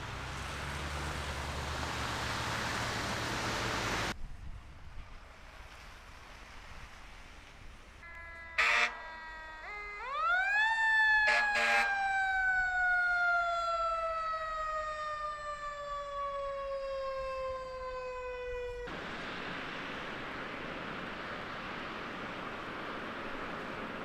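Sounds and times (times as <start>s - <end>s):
steady rushing noise: 18.9s - 24.0s.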